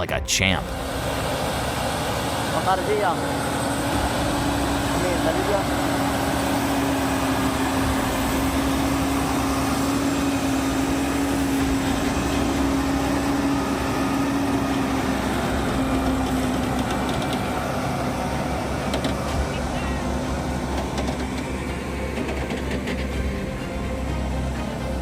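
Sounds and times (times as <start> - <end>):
truck engine droning: 0.0 - 25.0.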